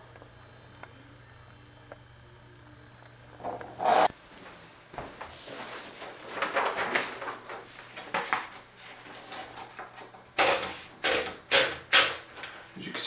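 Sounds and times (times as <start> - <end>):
paper rustling: 5.2 - 10.9
typewriter platen ratchet clicking: 10.4 - 12.5.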